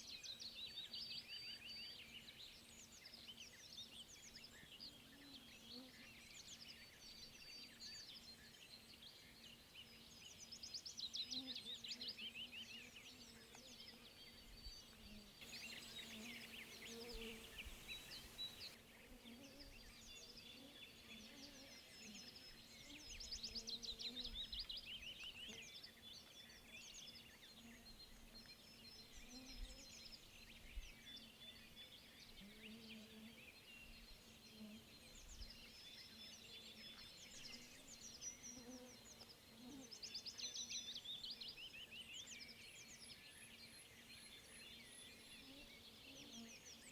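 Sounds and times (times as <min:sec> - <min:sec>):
low steady hum: 0:15.4 - 0:18.8
songbirds chirping: 0:15.4 - 0:18.8.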